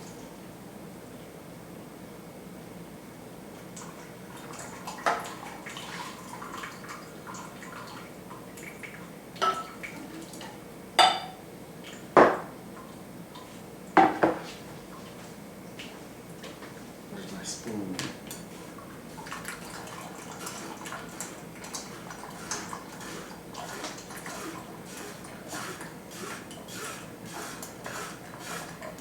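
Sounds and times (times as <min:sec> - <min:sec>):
kitchenware clinking: 0:09.4 - 0:09.8, 0:11.0 - 0:11.4
juice dripping through a strainer: 0:19.2 - 0:29.0.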